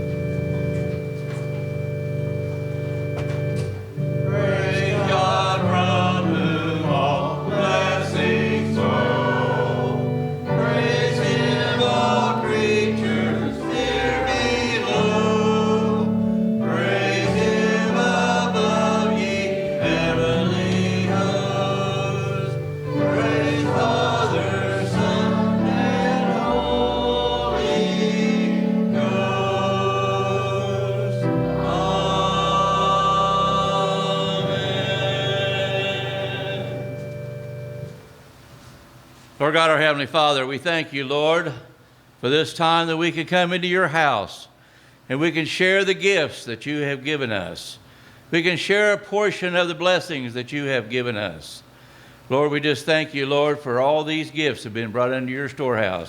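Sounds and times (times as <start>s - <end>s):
held keyboard accompaniment: 0.0s - 39.2s
people singing: 4.2s - 37.1s.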